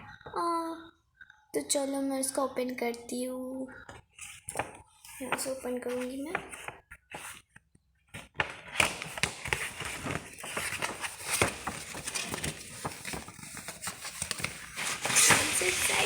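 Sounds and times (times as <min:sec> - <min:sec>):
cardboard and plastic rustling: 0:04.0 - 0:07.6, 0:08.2 - 0:16.0.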